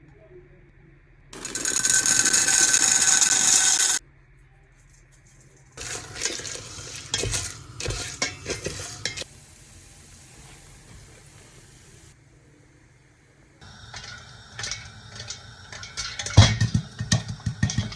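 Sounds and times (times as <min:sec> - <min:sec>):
pot and utensils clattering: 0:05.8 - 0:09.3, 0:13.6 - 0:17.9.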